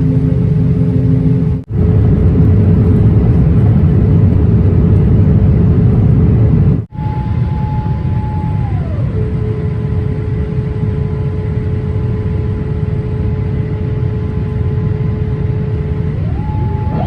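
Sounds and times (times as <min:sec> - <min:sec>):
low rumble of jet aircraft: 0:00.0 - 0:17.0
mechanical whine: 0:06.7 - 0:17.0.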